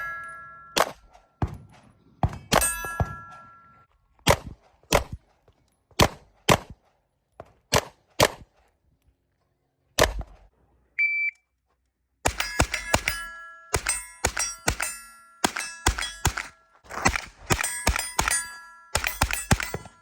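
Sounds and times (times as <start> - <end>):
steel targets ringing: 0.0 - 1.1, 2.5 - 3.9, 12.3 - 16.9, 17.5 - 20.0
gunshots: 4.2 - 5.2, 6.0 - 6.8, 7.7 - 8.5, 12.2 - 20.0
electronic shot timer beep: 11.0 - 11.4.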